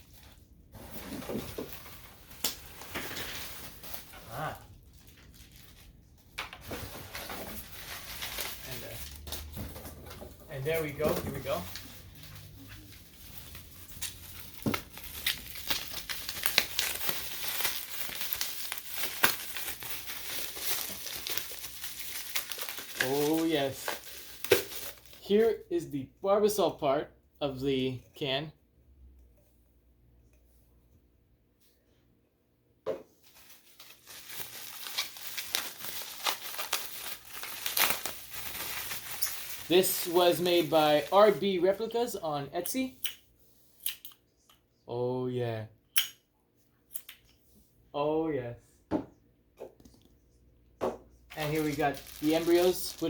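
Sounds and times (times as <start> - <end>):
packing material crinkling: 1.4 - 6.0, 6.7 - 9.5, 10.5 - 25.4, 33.2 - 42.2, 51.3 - 53.0.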